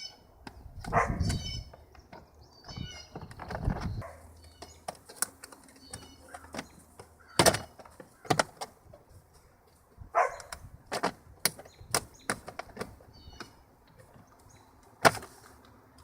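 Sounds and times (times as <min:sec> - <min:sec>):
plastic clicks and knocks: 0:04.5 - 0:08.8, 0:10.4 - 0:14.3.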